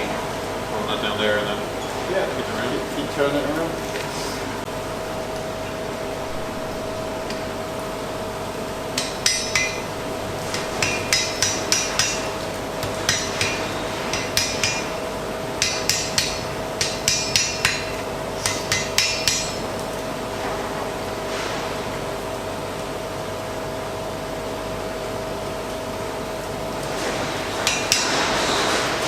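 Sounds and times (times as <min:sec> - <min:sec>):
hammer striking iron on anvil: 0:08.9 - 0:19.7, 0:27.6 - 0:28.2.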